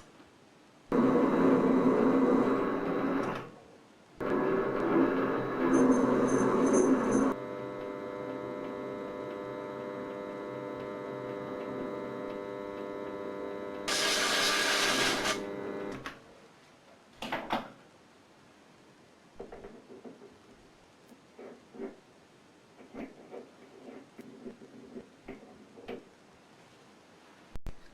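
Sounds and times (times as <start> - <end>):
machine humming: 0.9 - 3.4, 4.2 - 16.0
loud noisy burst: 13.9 - 15.5.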